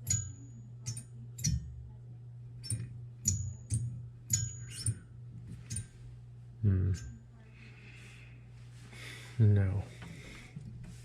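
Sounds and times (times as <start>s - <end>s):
steady low hum: 0.0s - 11.0s
metallic tool clinks and taps: 2.6s - 5.0s.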